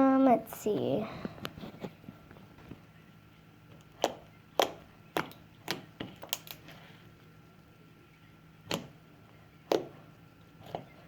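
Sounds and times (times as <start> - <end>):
slime popping when squished: 3.9 - 6.6.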